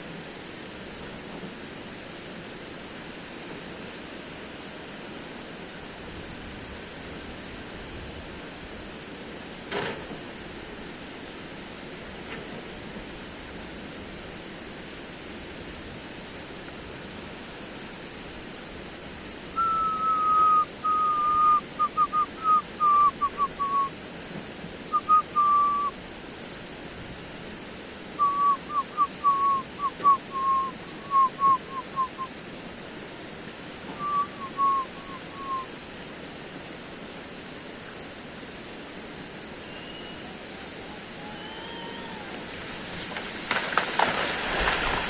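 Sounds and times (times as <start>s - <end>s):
steady hiss: 0.0s - 45.0s
whistled notes: 19.6s - 23.9s, 24.9s - 26.0s, 28.2s - 32.3s, 33.9s - 35.7s, 39.6s - 40.3s.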